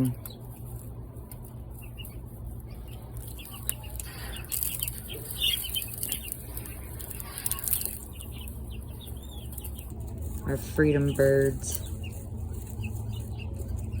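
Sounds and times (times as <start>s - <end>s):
hens clucking and peeping: 0.0s - 14.0s
pecking ticks and scratches: 0.0s - 14.0s.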